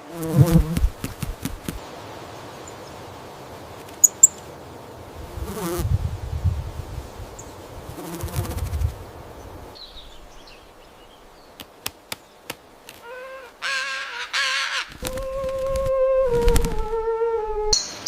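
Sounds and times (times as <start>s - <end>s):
fly buzzing: 0.0s - 1.8s, 5.2s - 5.9s, 7.8s - 9.0s, 12.9s - 17.8s
pitched animal call: 13.0s - 17.8s.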